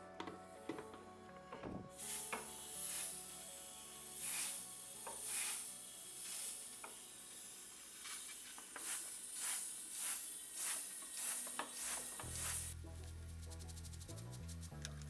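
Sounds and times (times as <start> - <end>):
fuel injector spraying hissing bursts: 2.0 - 3.3, 4.0 - 6.7, 7.9 - 12.8.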